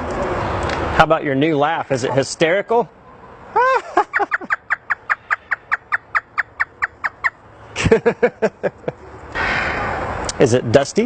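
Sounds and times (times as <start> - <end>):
parrot imitating human laugh: 3.5 - 4.8.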